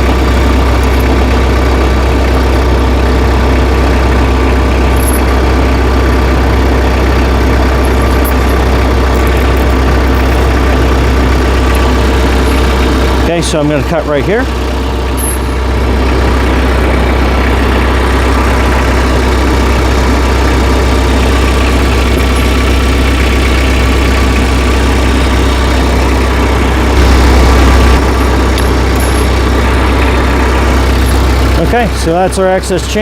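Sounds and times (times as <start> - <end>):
tractor engine idling: 0.0 - 33.0.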